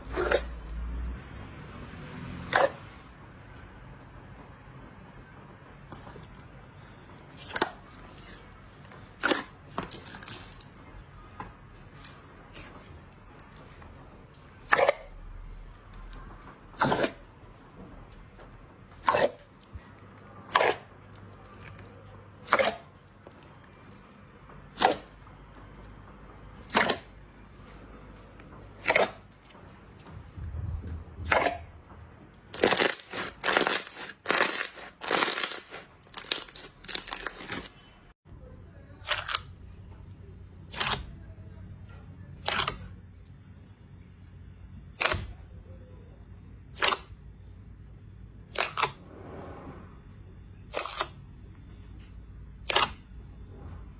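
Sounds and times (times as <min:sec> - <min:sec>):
slime squished wet pops: 0:40.7 - 0:41.1, 0:42.4 - 0:42.9, 0:45.0 - 0:45.3, 0:46.7 - 0:47.1, 0:48.5 - 0:49.0, 0:52.6 - 0:53.0.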